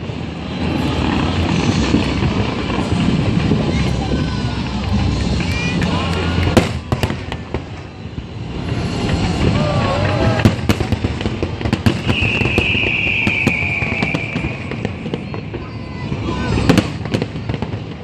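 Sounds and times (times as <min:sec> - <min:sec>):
fireworks bangs and crackles: 0:00.0 - 0:18.0
high firework whistle: 0:06.6 - 0:17.8.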